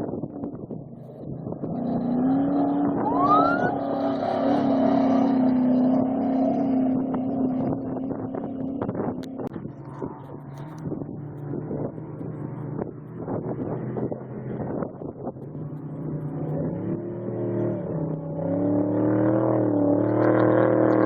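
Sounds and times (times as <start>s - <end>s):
off-road vehicle engine driving by: 0.0s - 21.0s.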